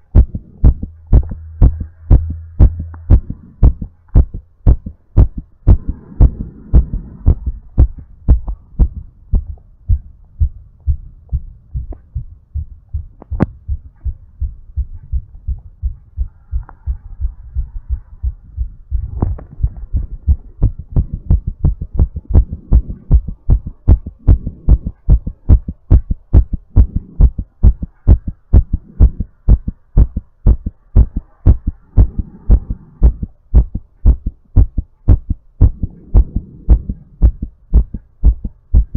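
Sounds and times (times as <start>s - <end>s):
heart beating: 0.0s - 38.9s
faint breathing: 5.7s - 7.7s, 31.9s - 33.3s.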